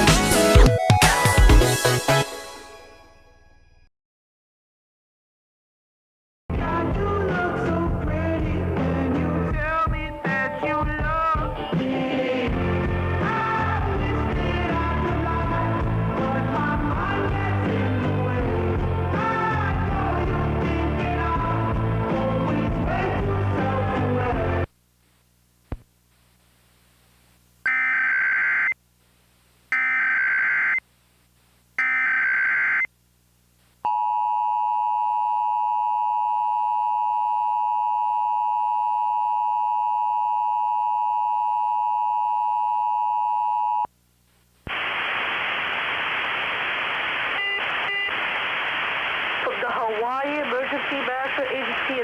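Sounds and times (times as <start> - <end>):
music: 0.0 - 3.9, 6.5 - 24.7
radio static hiss: 24.6 - 33.8, 44.2 - 52.0
data tone bursts: 27.7 - 28.8, 29.7 - 30.8, 31.8 - 32.9.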